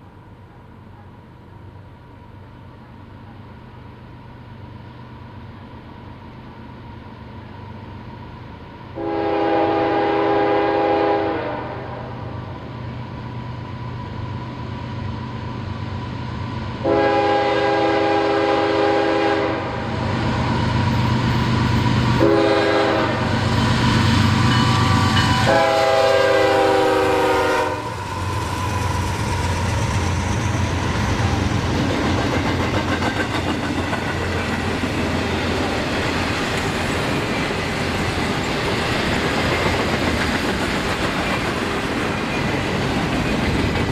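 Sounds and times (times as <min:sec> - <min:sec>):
train rumbling past: 0:00.0 - 0:43.9
locomotive air horn blasts: 0:09.0 - 0:12.3, 0:16.8 - 0:19.8, 0:22.2 - 0:23.3, 0:24.6 - 0:28.0
wheels clicking over rail joints: 0:27.9 - 0:43.9.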